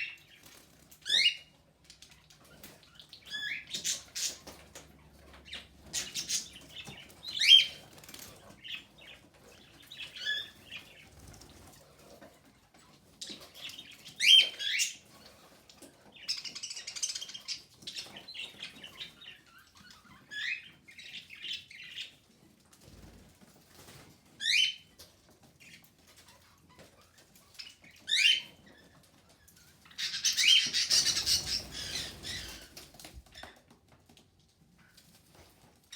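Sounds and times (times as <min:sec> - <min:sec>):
budgerigars chirping: 0:02.8 - 0:04.6, 0:05.5 - 0:08.0, 0:08.6 - 0:11.1, 0:13.2 - 0:15.4, 0:27.5 - 0:28.7, 0:29.9 - 0:32.8.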